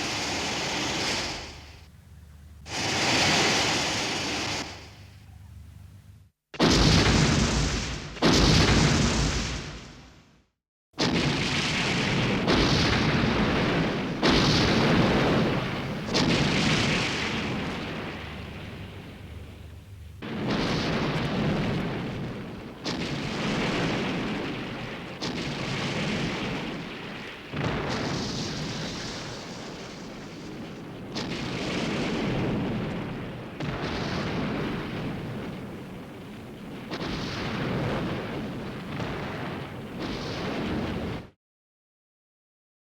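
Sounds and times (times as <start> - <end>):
heavy explosion-like blasts: 6.6 - 10.2, 11.0 - 41.4.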